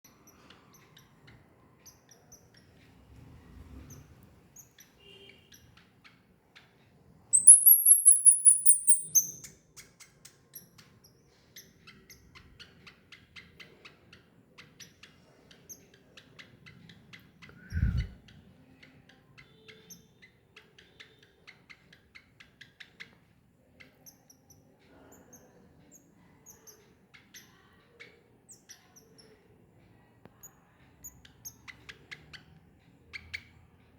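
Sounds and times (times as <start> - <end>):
faint squeaks and ticks: 0.0 - 33.9
baby squirrel high-pitched chirps: 0.2 - 2.8, 7.3 - 13.6, 14.6 - 18.1, 18.8 - 23.2, 23.8 - 29.5, 30.3 - 33.6.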